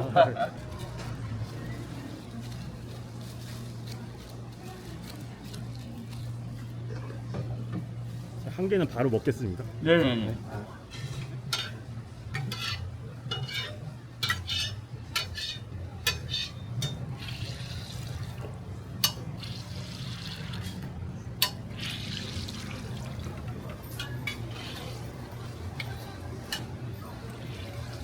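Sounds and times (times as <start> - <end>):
metal tools clattering on griddle: 10.9 - 19.6, 21.4 - 28.0
oil sizzling: 19.0 - 25.3.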